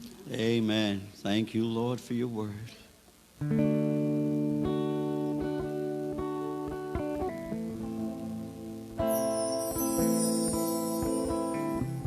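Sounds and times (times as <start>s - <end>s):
guitar playing slow chords: 3.4s - 12.0s.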